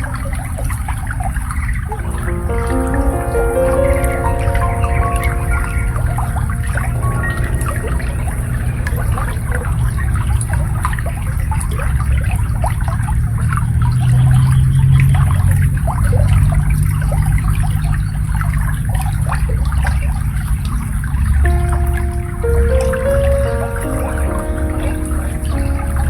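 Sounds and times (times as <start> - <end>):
shallow water babbling: 1.9 - 13.8, 21.5 - 26.0.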